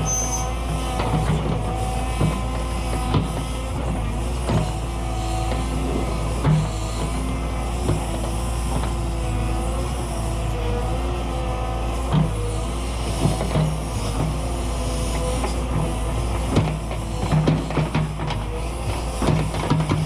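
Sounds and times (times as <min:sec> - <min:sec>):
hydraulic whine: 0:00.0 - 0:09.2
excavator diesel engine: 0:00.0 - 0:20.0.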